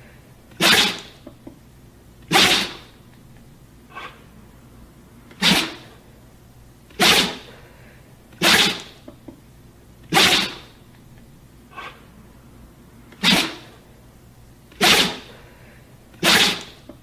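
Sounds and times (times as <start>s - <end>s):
dog sneezing: 0.5s - 1.2s, 2.3s - 2.9s, 3.9s - 4.2s, 5.3s - 6.0s, 6.9s - 7.5s, 8.4s - 9.0s, 10.1s - 10.8s, 11.7s - 12.0s, 13.2s - 13.8s, 14.7s - 15.4s, 16.2s - 16.9s.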